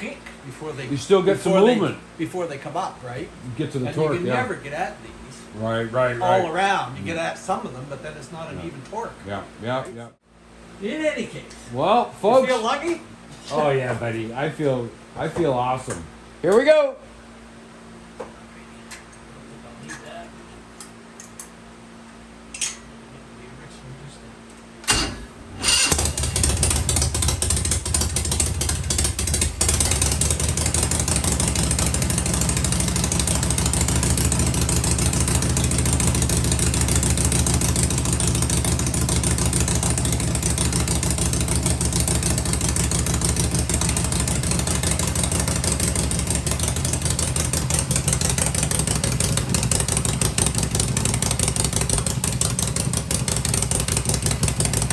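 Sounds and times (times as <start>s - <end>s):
motorcycle engine running: 24.9s - 54.9s.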